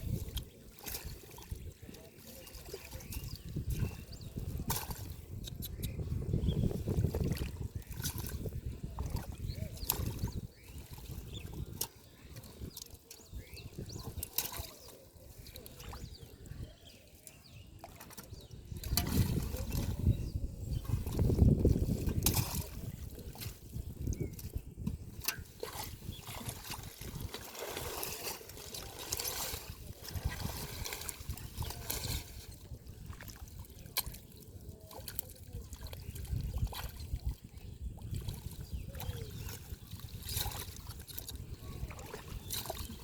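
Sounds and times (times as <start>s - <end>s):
hands splashing in river water: 0.0s - 6.0s, 6.6s - 37.4s, 38.0s - 43.0s.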